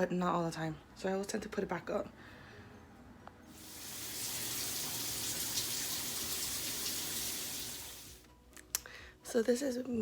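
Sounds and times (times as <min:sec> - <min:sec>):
water running from a tap: 0:03.5 - 0:08.2.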